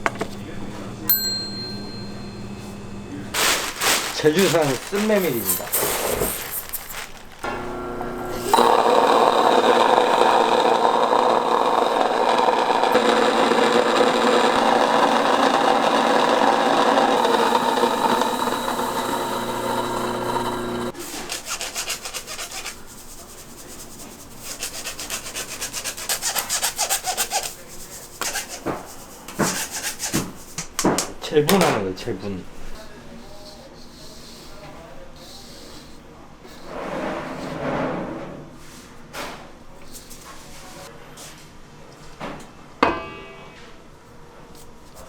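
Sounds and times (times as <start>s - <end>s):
mill grinding grain: 1.9s - 22.8s.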